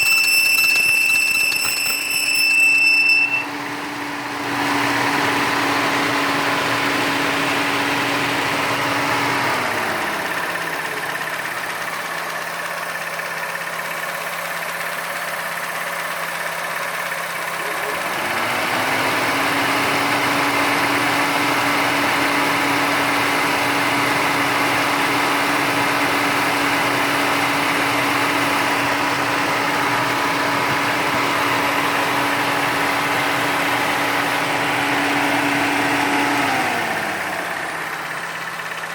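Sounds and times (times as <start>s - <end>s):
air conditioning whistle: 0.0s - 4.2s
car engine idling: 3.4s - 38.9s.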